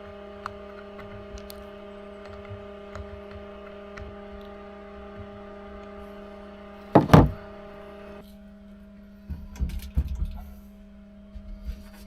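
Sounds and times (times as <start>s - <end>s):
knock and clatter: 7.0s - 7.4s.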